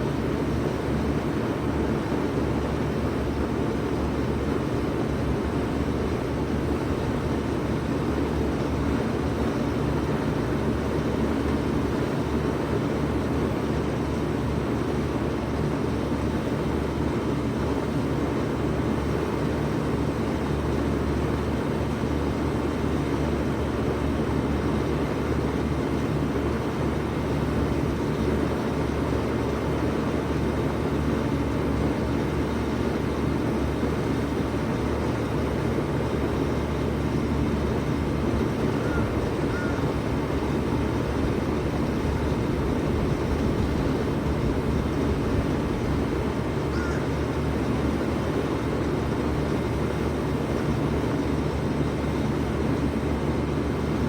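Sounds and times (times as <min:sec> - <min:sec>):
compressor hum: 0:00.0 - 0:54.0
fan rushing: 0:16.6 - 0:54.0.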